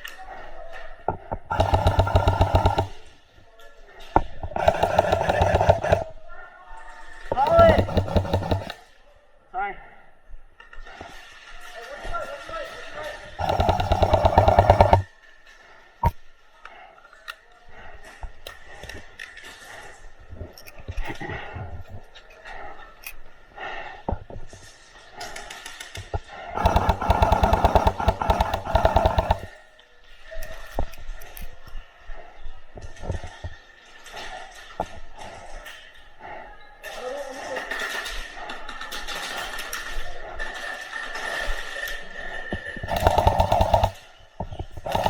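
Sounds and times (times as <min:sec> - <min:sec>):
airsoft gun full-auto burst: 0:01.5 - 0:03.2, 0:04.4 - 0:06.2, 0:07.3 - 0:08.9, 0:13.3 - 0:15.1, 0:26.6 - 0:29.6, 0:42.9 - 0:45.0.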